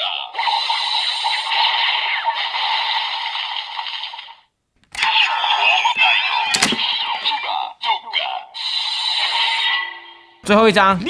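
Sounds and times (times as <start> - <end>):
sharp click: 4.8 - 5.1, 6.5 - 6.9.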